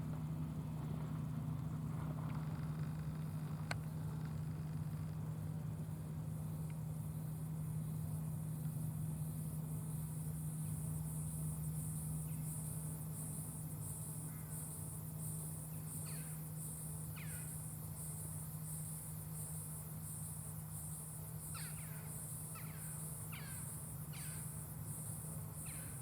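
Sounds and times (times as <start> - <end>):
constant low hum: 0.0 - 26.0
grasshopper stridulating: 2.4 - 26.0.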